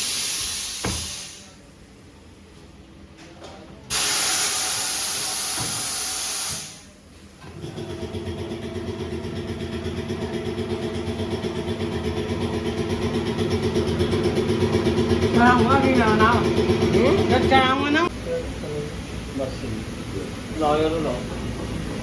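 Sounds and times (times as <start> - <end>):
compressed air hissing: 0.0 - 1.6, 3.9 - 7.0.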